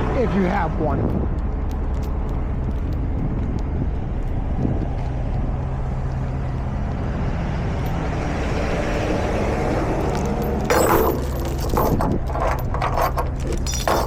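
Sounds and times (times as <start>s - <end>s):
short clatter: 10.1s - 14.0s.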